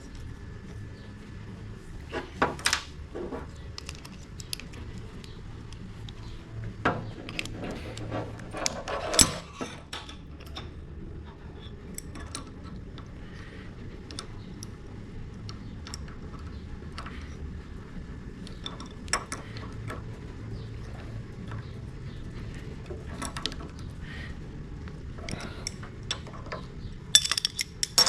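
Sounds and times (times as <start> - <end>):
light metallic clicks and clinks: 8.6 - 17.4, 25.2 - 28.0.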